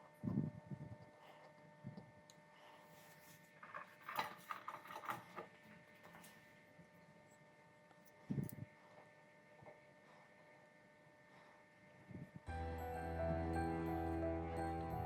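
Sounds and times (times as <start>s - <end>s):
faint steady hum: 0.0s - 15.0s
small clicks and scrapes: 0.3s - 10.5s.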